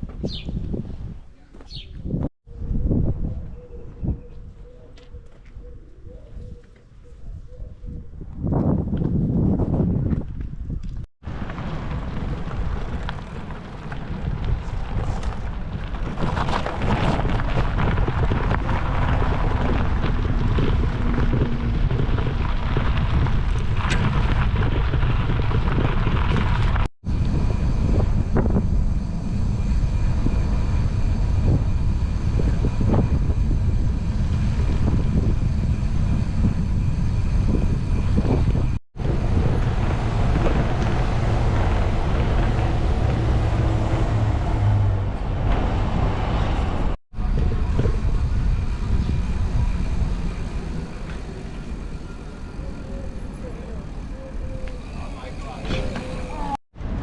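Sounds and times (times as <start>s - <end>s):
wind rumbling over microphone: 0.0s - 57.0s.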